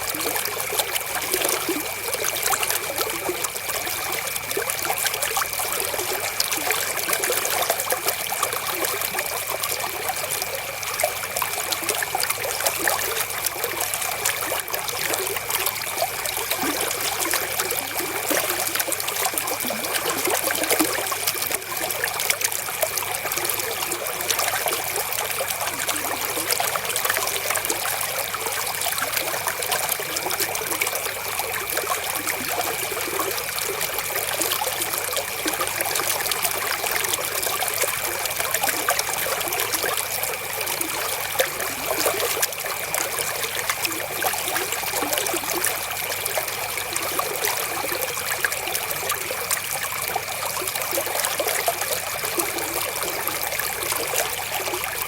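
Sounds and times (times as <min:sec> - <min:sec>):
river water trickling: 0:00.0 - 0:55.0.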